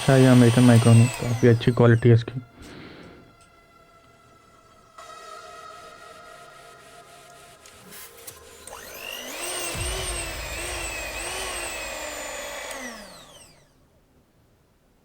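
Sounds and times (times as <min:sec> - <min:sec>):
electric hand mixer whining: 0:00.0 - 0:03.1, 0:05.0 - 0:13.7.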